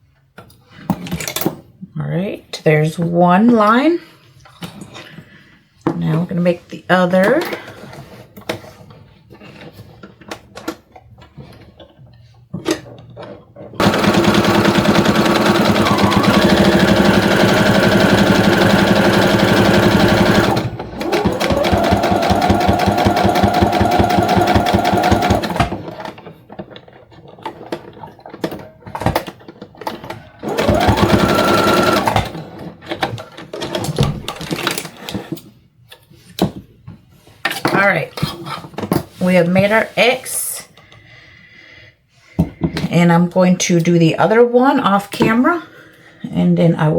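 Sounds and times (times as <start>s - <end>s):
sewing machine stitching: 13.8s - 29.3s, 29.9s - 35.0s.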